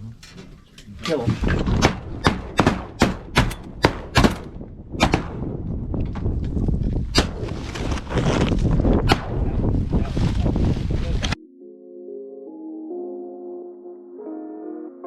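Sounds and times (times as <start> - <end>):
shotgun shots: 1.8 - 5.5.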